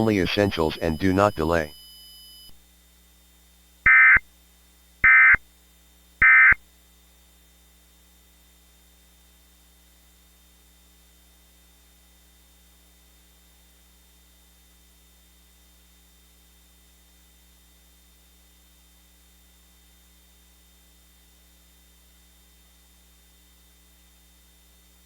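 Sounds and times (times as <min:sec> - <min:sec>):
faint steady hum: 0:00.0 - 0:02.6
harsh digital chirp bursts: 0:03.9 - 0:04.2, 0:06.2 - 0:06.6.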